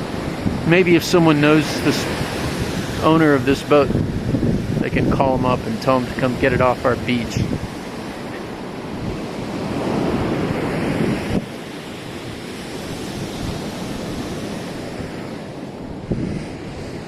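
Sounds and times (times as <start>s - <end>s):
surf washing on a beach: 0.0s - 17.0s
wind on the microphone: 0.0s - 17.0s.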